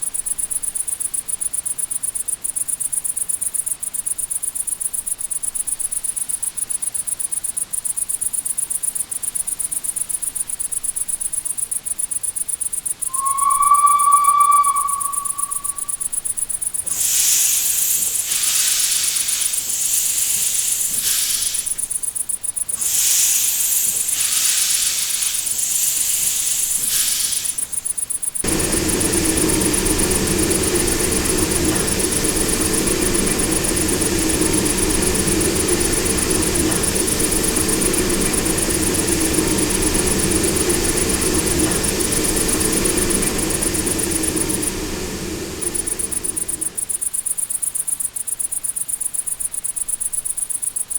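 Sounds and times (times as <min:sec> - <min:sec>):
crickets chirping: 0:13.1 - 0:16.1, 0:22.4 - 0:50.9
steam locomotive whistle: 0:13.1 - 0:16.1, 0:28.4 - 0:47.0.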